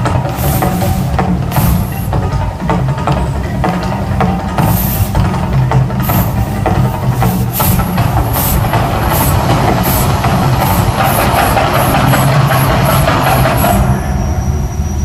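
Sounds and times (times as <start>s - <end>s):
soundtrack drum beats: 0.0s - 14.0s.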